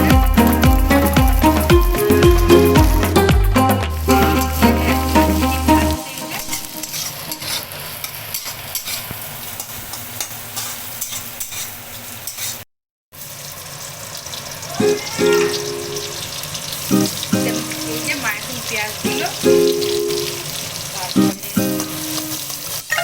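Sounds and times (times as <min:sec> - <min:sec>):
food sizzling in a pan: 0:00.0 - 0:23.0
utensil scraping a pan: 0:04.1 - 0:12.6.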